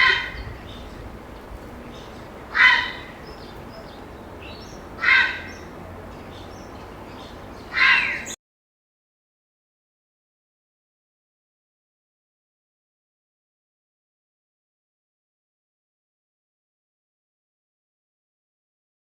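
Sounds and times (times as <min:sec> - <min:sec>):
herons calling harshly: 0:00.0 - 0:08.4
steady background hiss: 0:00.0 - 0:08.4.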